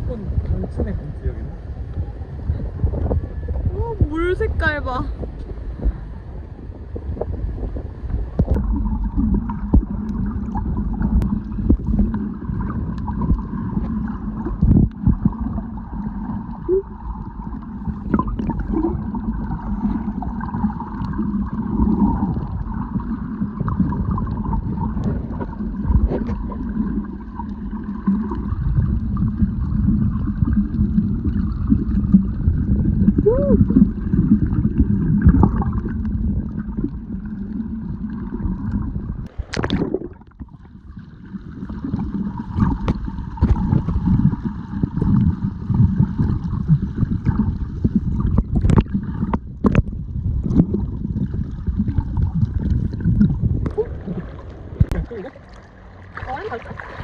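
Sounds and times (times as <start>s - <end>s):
water rumbling and gurgling: 0.0s - 57.0s.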